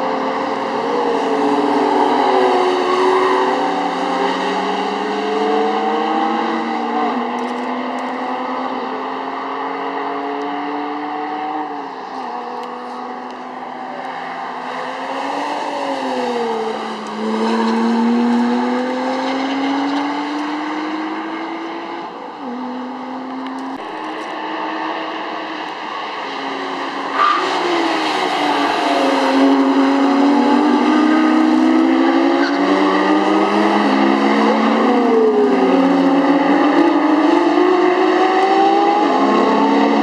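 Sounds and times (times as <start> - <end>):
sports car engine accelerating: 0.0 - 26.0.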